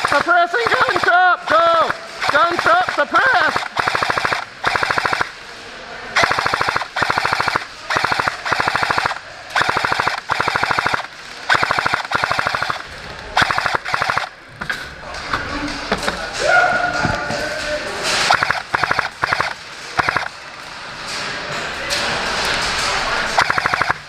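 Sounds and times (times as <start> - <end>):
airsoft gun firing full-auto: 1.8 - 5.3, 6.2 - 12.8, 13.4 - 14.3, 18.3 - 20.3, 23.4 - 24.0.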